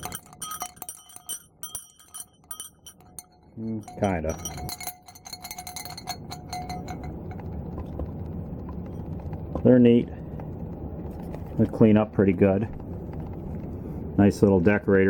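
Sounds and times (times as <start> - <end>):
sleigh bells jingling: 0.0 - 7.6.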